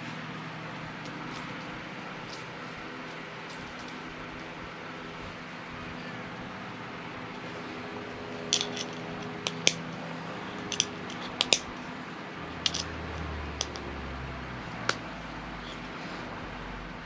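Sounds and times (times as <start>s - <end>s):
steady low hum: 0.0s - 17.0s
plastic bricks clicking together: 8.5s - 9.8s, 10.6s - 11.7s, 12.6s - 12.9s, 13.6s - 13.9s.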